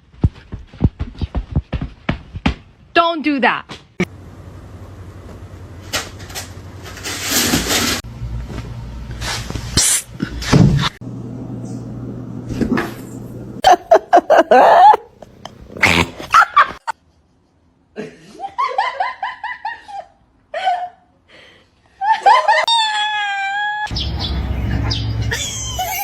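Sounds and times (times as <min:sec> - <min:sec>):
low hum: 0:11.0 - 0:13.6
person laughing: 0:13.6 - 0:17.0, 0:24.6 - 0:26.0.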